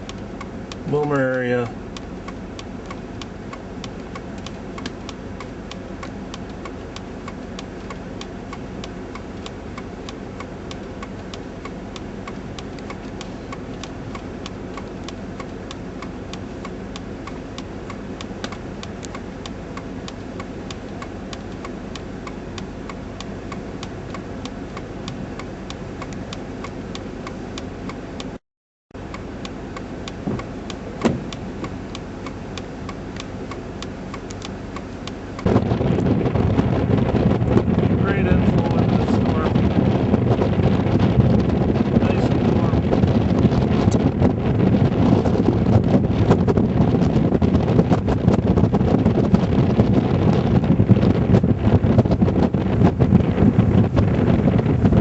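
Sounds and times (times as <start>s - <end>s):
light regular ticking: 0.0s - 28.4s, 29.0s - 35.5s
vehicle hum inside car: 0.0s - 28.4s, 29.0s - 55.0s.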